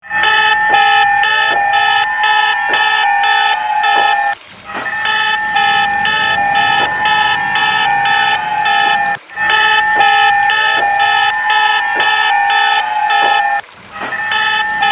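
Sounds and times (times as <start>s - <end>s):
emergency alert alarm tones: 0.0s - 14.9s
electronic beeping: 0.1s - 14.9s
short rising sweeps: 4.4s - 10.4s.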